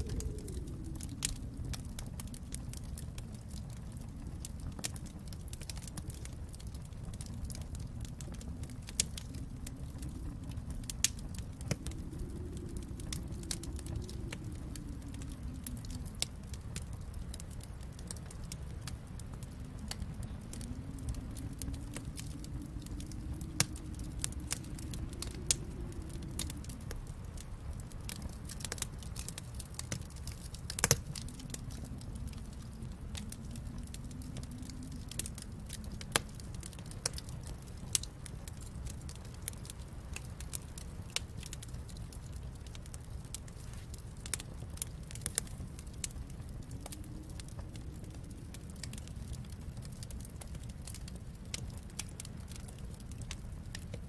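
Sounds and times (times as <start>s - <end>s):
low rumble: 0.0s - 40.2s
fire pops: 0.0s - 54.0s
wood fire crackling: 0.0s - 54.0s.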